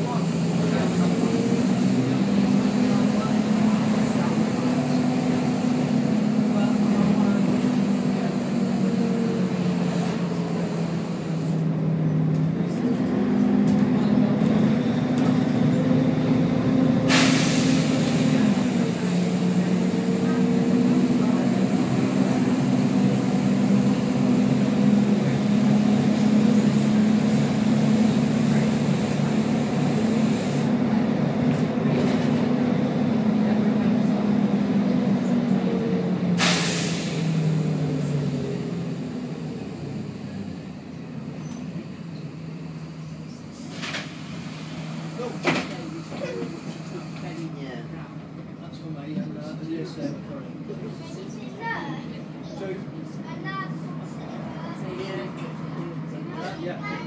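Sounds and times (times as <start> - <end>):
bus diesel engine running: 0.0 - 57.0
compressed air hisses: 17.1 - 18.0, 36.4 - 37.3.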